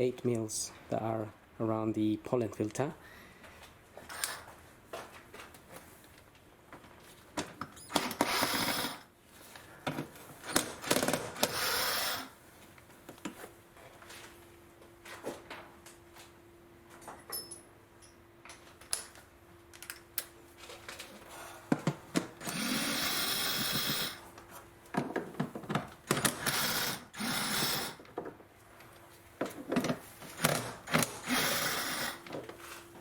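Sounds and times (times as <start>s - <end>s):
clicks and knocks of tool and bolts: 16.9s - 22.6s, 24.4s - 26.6s, 28.0s - 31.3s
socket tool spinning bolts: 22.4s - 24.2s, 26.1s - 28.0s, 30.4s - 32.2s.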